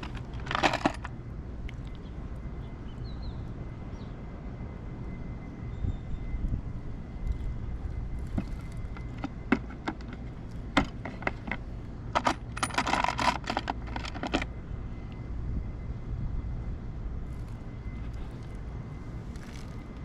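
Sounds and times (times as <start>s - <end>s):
small metal tools clinking: 0.0s - 1.1s, 8.2s - 14.5s, 19.3s - 19.9s.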